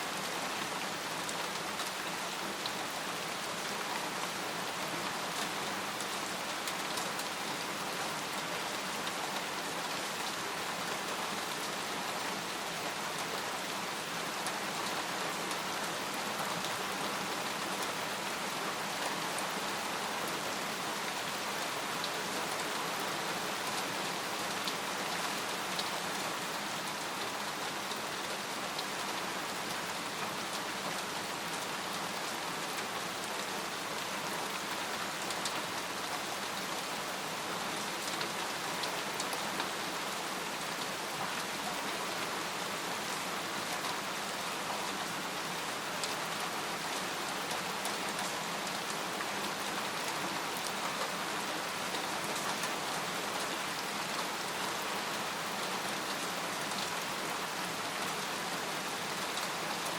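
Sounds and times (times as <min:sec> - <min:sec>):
rain falling on a tent: 0:00.0 - 0:59.9.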